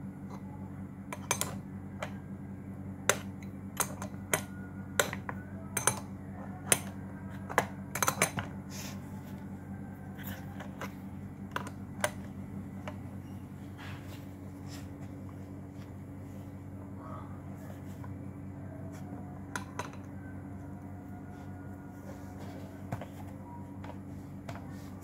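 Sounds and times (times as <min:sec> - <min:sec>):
steady low hum: 0:00.0 - 0:25.0
wrench clicking and tapping on metal: 0:03.1 - 0:06.1.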